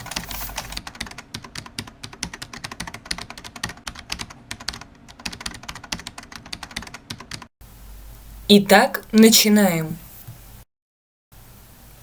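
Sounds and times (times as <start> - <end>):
computer keyboard typing: 0.0 - 7.5.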